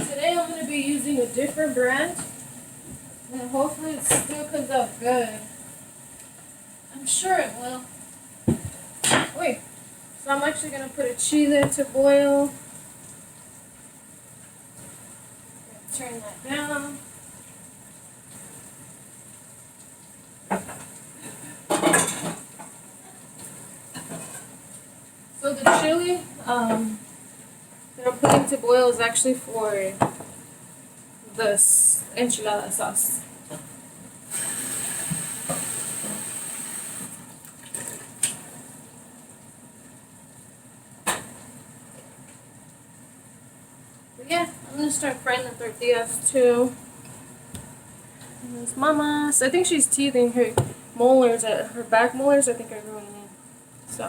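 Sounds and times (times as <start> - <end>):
low background hiss: 0.0 - 54.0
pots and utensils clattering: 20.6 - 22.7, 23.9 - 24.5.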